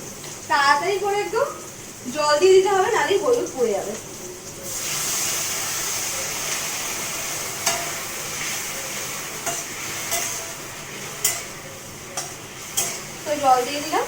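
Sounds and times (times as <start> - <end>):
water sizzling in hot pan: 0.0 - 14.0
spoon clicking against pan: 7.6 - 8.0, 9.4 - 10.4, 11.2 - 11.6, 12.2 - 13.1.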